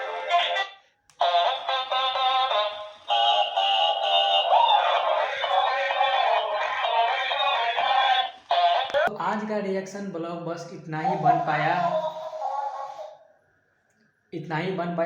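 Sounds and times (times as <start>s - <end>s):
toy playing song through tinny speaker: 0.0s - 9.1s, 11.0s - 13.3s.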